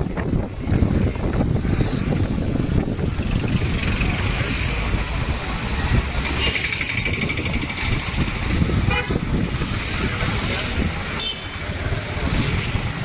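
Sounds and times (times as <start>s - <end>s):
road traffic noise: 0.0s - 13.0s
wind rumble on microphone: 0.0s - 13.0s
vehicle horn: 8.9s - 9.2s, 11.2s - 11.6s.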